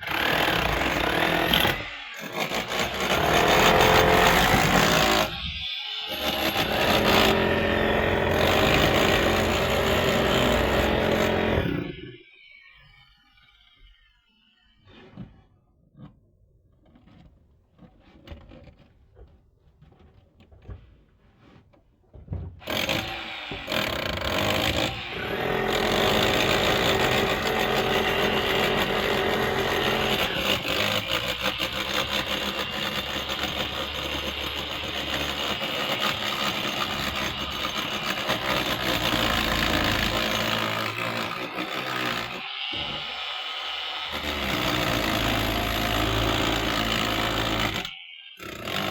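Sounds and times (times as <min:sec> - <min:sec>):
power tool running: 0:00.0 - 0:12.2, 0:22.7 - 0:48.9.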